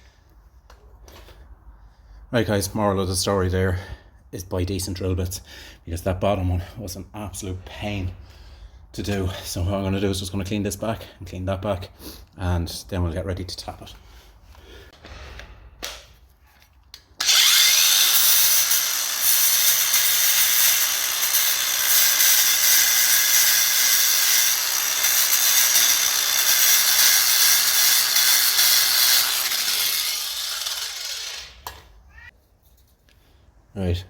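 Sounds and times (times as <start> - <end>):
power tool abrasive hiss: 17.2 - 31.6.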